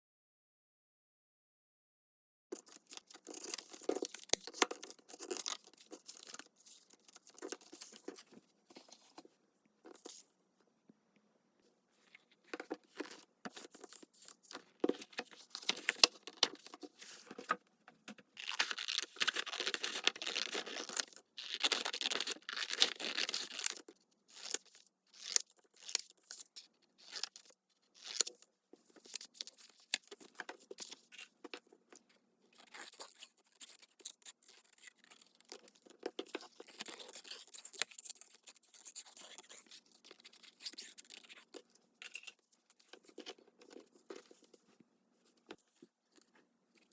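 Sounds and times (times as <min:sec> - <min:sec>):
paper rustling: 0:12.0 - 0:17.6
paper handling: 0:12.0 - 0:23.8.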